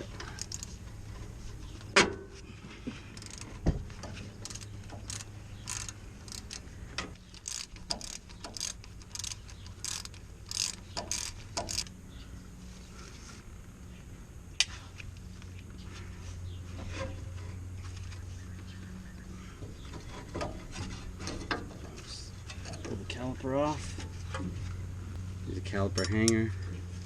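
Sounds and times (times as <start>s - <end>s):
hand ratchet clicking: 3.2s - 3.5s, 4.4s - 11.9s.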